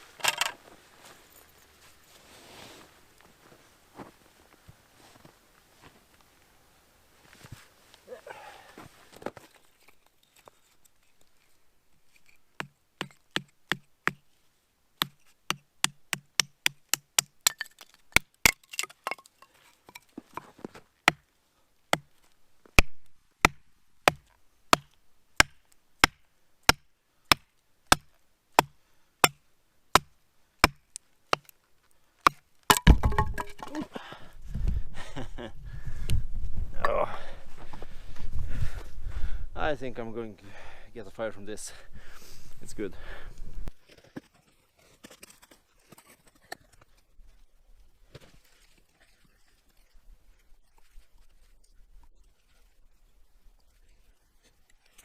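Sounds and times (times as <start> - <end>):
wood being chopped: 12.6 - 14.2, 15.0 - 19.3, 19.9 - 21.2, 21.9 - 22.2, 22.8 - 31.5, 32.2 - 33.8.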